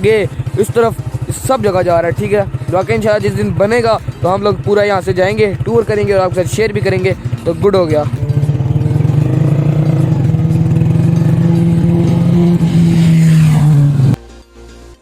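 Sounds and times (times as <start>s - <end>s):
vehicle engine running: 0.0s - 14.2s.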